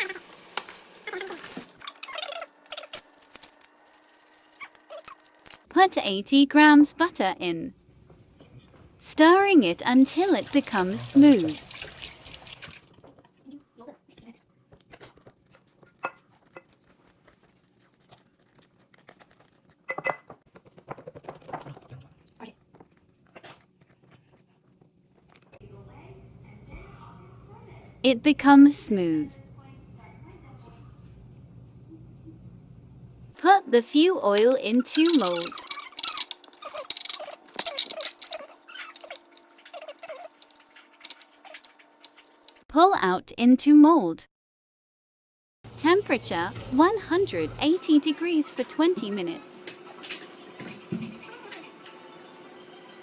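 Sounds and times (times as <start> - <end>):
small squeaks: 1.0 - 3.3, 4.2 - 5.6, 34.4 - 42.6
spoon scraping and tapping bowl: 19.9 - 20.4, 34.4 - 42.6.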